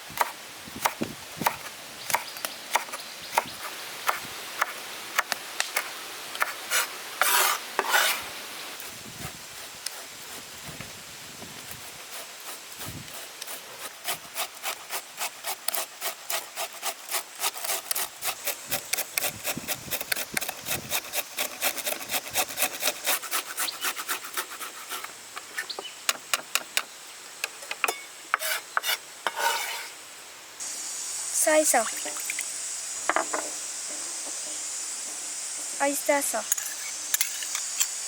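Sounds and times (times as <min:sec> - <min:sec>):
rasping strokes by hand: 0:06.4 - 0:08.3, 0:11.6 - 0:25.1.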